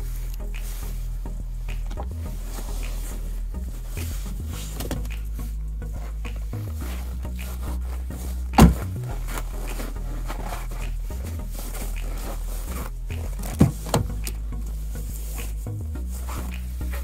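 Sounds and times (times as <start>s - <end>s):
low background music: 0.0s - 17.0s
heavy thumps of car seats folding: 8.6s - 8.9s.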